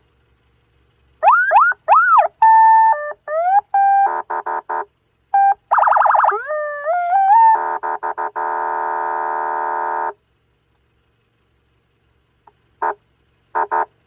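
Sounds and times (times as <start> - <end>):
electronic police siren wail: 1.2 - 4.8, 5.4 - 10.1
short electronic blips: 1.3 - 10.2
electronic horn tone: 2.1 - 10.2, 13.6 - 14.0.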